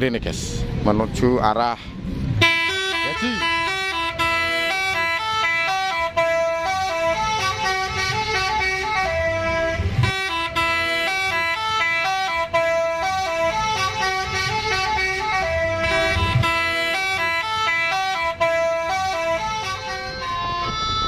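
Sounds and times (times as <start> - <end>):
vehicle engine rumble: 0.0 - 21.0
multi-tone horn playing a tune: 2.4 - 21.0.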